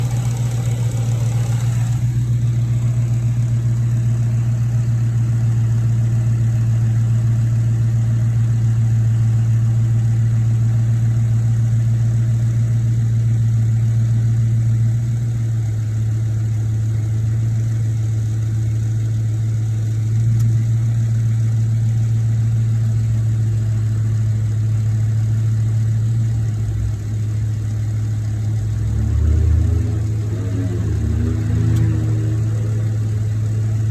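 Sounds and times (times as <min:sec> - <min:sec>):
engine clicking: 0:00.0 - 0:05.6, 0:29.8 - 0:33.9
car engine idling: 0:00.0 - 0:33.9.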